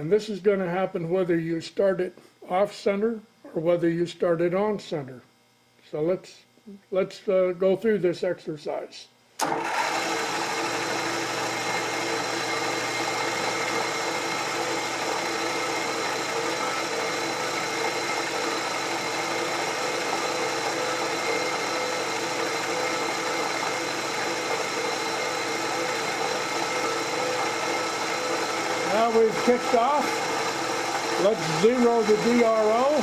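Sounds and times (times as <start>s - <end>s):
milling machine motor whining: 9.4s - 33.0s.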